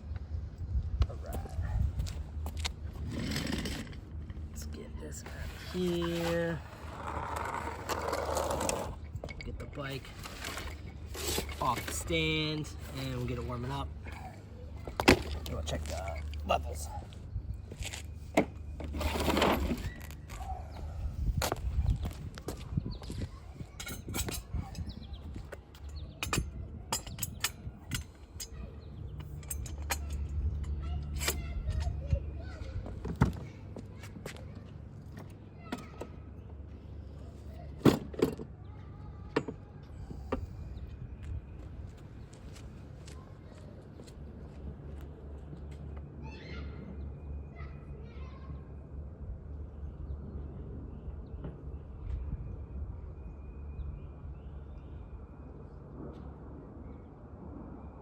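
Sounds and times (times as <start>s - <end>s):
birds chirping: 4.4s - 37.8s.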